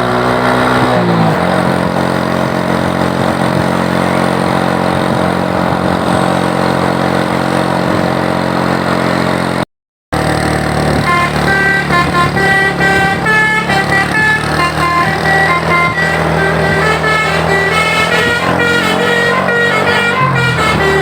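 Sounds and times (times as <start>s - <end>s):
bus engine running: 0.0s - 9.6s, 10.2s - 21.0s
multi-tone bus horn tune: 10.8s - 21.0s.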